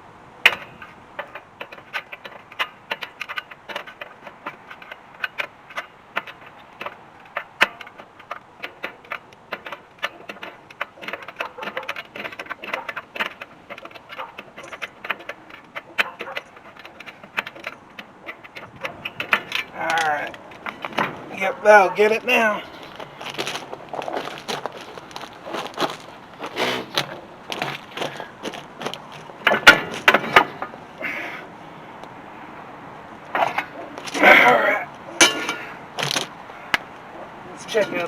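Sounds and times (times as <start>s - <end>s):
metallic clicking of hand tools: 33.3s - 36.8s.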